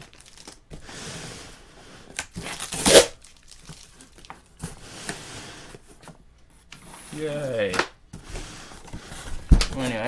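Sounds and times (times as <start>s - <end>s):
cardboard box ripping: 2.2s - 4.0s.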